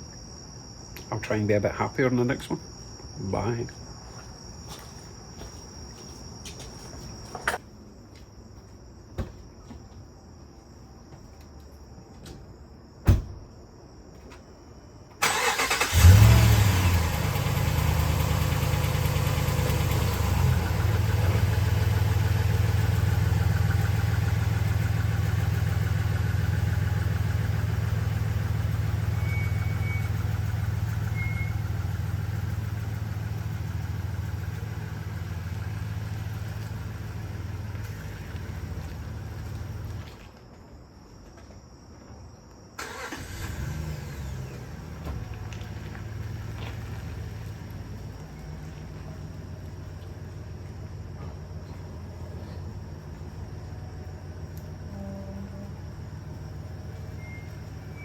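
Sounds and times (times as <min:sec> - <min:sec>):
crickets chirping: 0:00.0 - 0:58.0
truck engine starting and idling: 0:15.2 - 0:40.2, 0:42.8 - 0:58.0.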